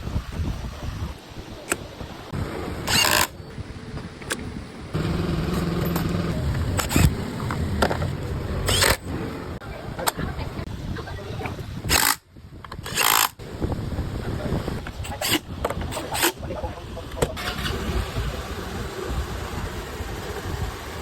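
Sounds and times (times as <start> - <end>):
motorcycle engine running: 4.9 - 9.6.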